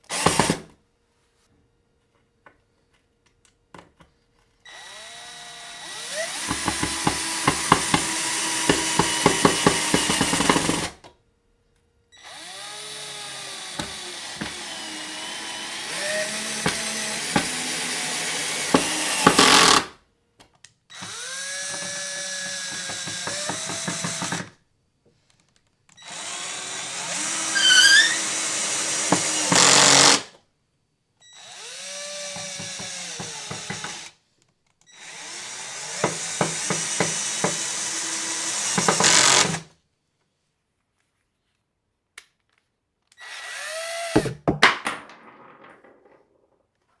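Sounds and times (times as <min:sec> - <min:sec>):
drill motor whine: 0:04.7 - 0:09.2, 0:12.2 - 0:19.8, 0:21.0 - 0:24.4, 0:26.0 - 0:30.2, 0:31.2 - 0:34.1.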